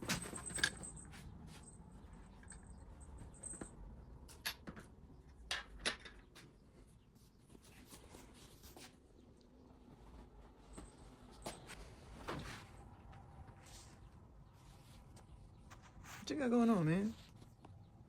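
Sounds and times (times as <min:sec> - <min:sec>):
soft rustling: 0:06.5 - 0:18.0.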